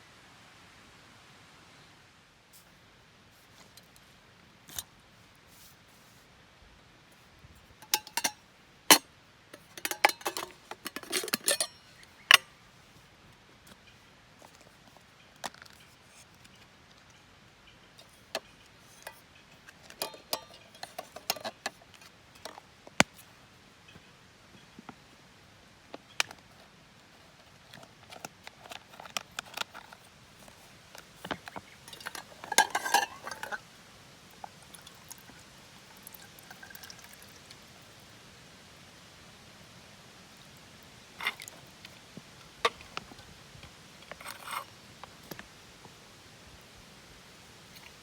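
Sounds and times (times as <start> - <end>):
small hard objects clinking: 7.8 - 9.0, 31.8 - 33.6.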